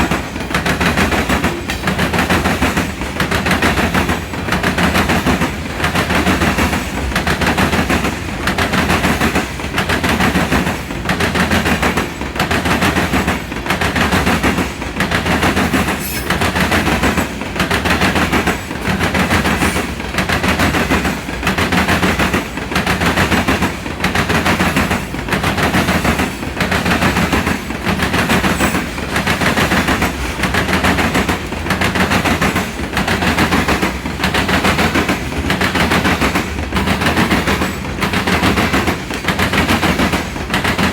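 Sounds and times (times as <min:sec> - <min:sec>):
train wheels clattering over rail joints: 0:00.0 - 0:40.9.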